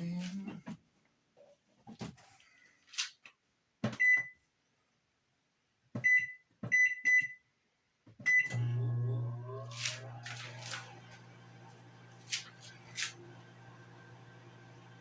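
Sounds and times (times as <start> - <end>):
microwave oven humming: 8.3 - 15.0.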